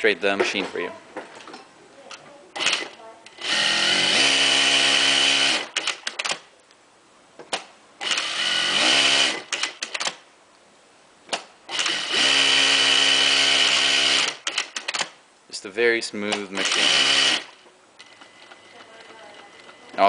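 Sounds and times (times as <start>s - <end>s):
sewing machine stitching: 2.6s - 6.3s, 8.0s - 10.0s, 11.7s - 15.0s, 16.6s - 19.8s.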